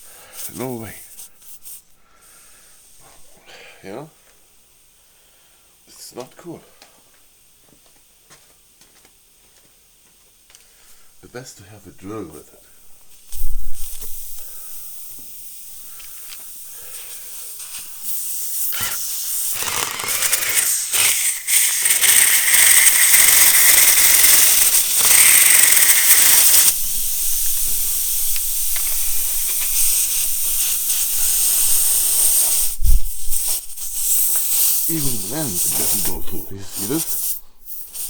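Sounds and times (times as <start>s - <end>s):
air hissing out of tyre: 0.0s - 3.0s, 12.7s - 38.0s.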